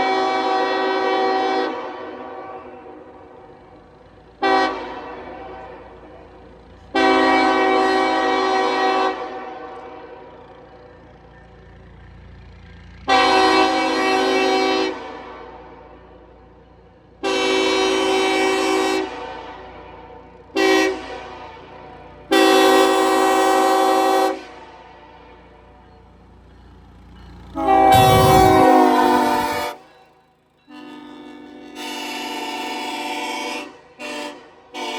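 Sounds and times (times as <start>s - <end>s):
train horn blasts: 0.0s - 10.7s, 13.0s - 16.3s, 17.2s - 25.8s, 27.5s - 29.9s, 30.7s - 34.9s
horn echo: 27.6s - 29.8s.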